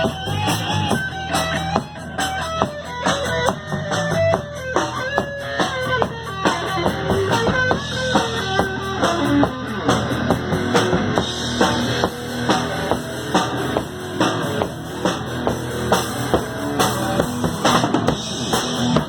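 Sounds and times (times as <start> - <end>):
bass guitar: 0.0 - 19.0
drum kit: 0.0 - 19.0
electric guitar melody: 0.0 - 19.0.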